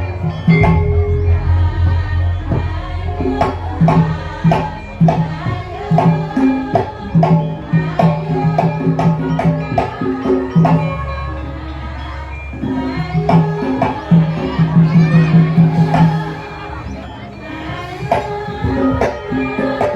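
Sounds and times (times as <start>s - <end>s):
sustained low notes: 0.4s - 7.8s
sharp drum strikes: 0.5s - 7.4s.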